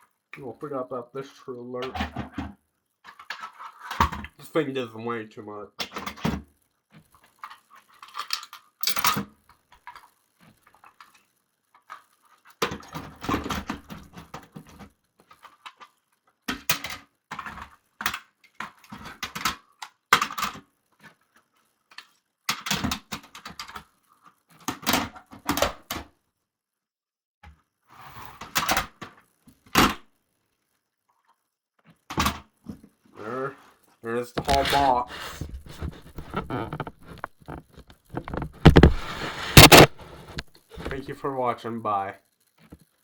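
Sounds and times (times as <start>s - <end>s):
heavy thump and shuffle: 34.4s - 41.0s
objects knocking and clunking: 34.4s - 41.0s.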